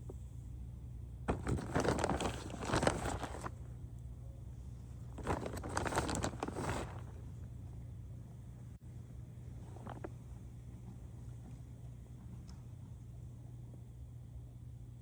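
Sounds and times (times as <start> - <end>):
steady low hum: 0.0 - 15.0
hands rustling and crinkling: 1.3 - 3.6, 5.0 - 7.5, 9.5 - 11.6.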